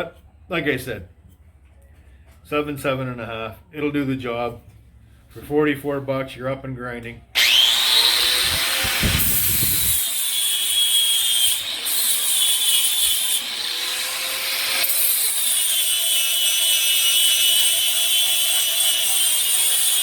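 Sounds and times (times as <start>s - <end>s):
angle grinder grinding steel: 7.4s - 20.0s.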